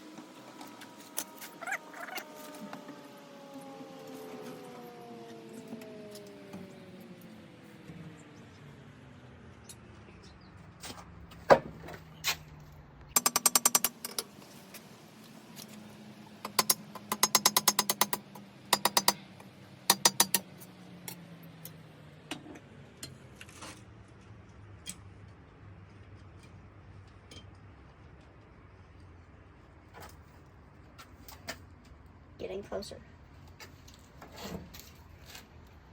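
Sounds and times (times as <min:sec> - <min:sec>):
hammer striking steel on anvil: 0:19.9 - 0:20.5.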